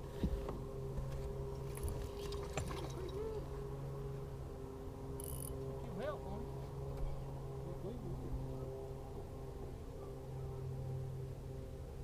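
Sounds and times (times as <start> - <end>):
electric motor humming: 3.0 - 9.8.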